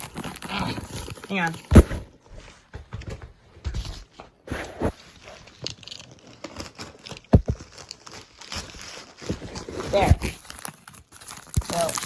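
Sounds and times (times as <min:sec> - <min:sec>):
cardboard package being opened: 0:00.0 - 0:02.2, 0:04.5 - 0:12.0.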